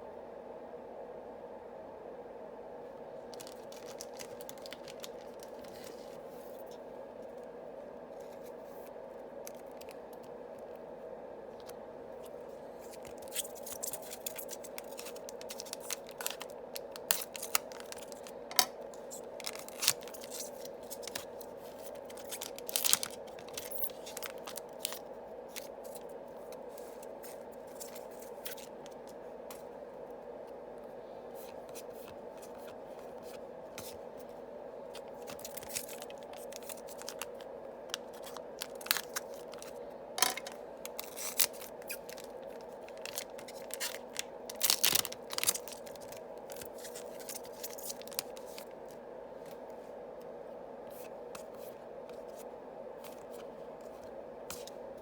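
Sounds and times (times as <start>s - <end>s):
low steady hum: 0.0s - 55.0s
foil wrappers crinkling and tearing: 3.3s - 6.6s, 12.8s - 29.2s, 34.9s - 49.0s.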